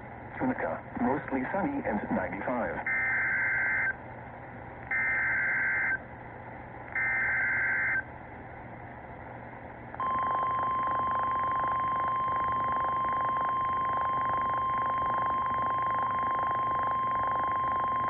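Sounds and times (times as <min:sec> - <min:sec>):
faint radio hiss: 0:00.0 - 0:18.0
steady alarm tone: 0:02.9 - 0:03.9, 0:04.9 - 0:06.0, 0:07.0 - 0:08.0, 0:10.0 - 0:18.0.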